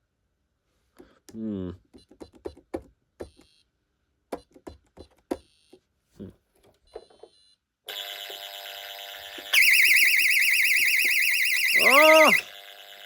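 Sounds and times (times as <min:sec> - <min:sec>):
alarm sounder: 0:09.4 - 0:13.0
short high beeps: 0:09.6 - 0:12.5.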